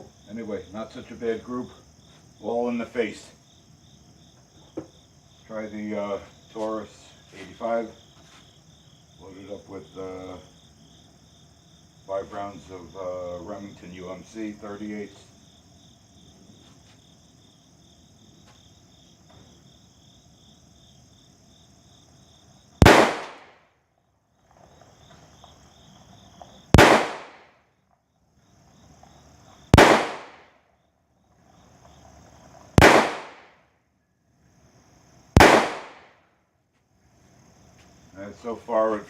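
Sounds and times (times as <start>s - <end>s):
revolver gunshots: 22.8s - 23.6s, 26.7s - 27.6s, 29.7s - 30.6s, 32.8s - 33.6s, 35.4s - 36.2s.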